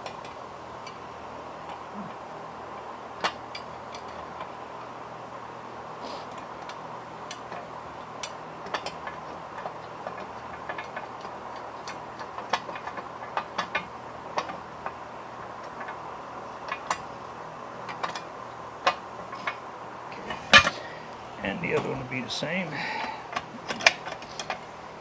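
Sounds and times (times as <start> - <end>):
faint hum: 0.0 - 4.1, 19.4 - 25.0.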